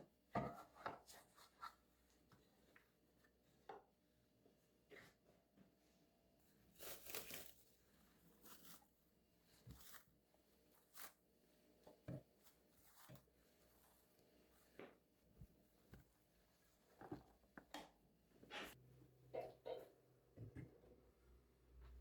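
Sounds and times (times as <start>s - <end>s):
soft rustle: 6.7s - 17.6s.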